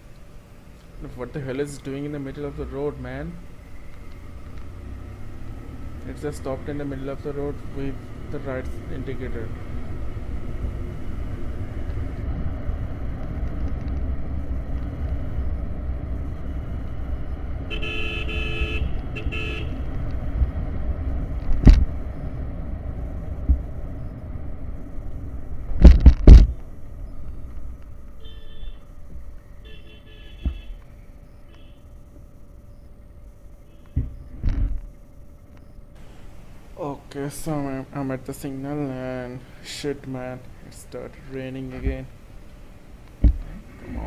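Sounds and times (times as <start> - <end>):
motorcycle engine rumble: 0.0 - 44.0
short horn toots: 17.7 - 19.8, 28.2 - 28.9
vehicle horn blasts: 17.7 - 19.8, 28.2 - 28.9, 29.6 - 30.8, 31.5 - 31.8, 33.7 - 34.2
sharp loud knocks: 43.2 - 43.4.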